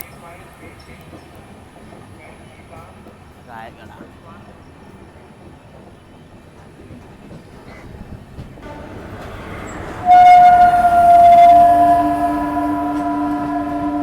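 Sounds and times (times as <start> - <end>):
train rumbling on rails: 0.0 - 14.0
locomotive horn blast: 8.6 - 14.0.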